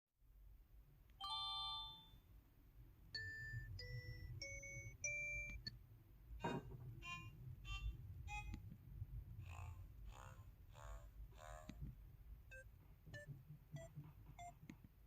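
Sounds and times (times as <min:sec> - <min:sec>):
phone ringing chime: 0:01.2 - 0:02.2
electronic beeps rising in pitch: 0:03.2 - 0:05.7.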